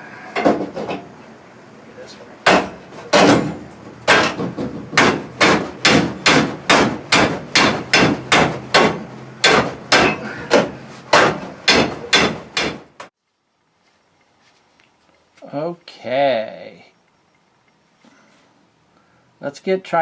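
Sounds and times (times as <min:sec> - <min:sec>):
hammer pounding on metal tool: 0:02.4 - 0:13.0.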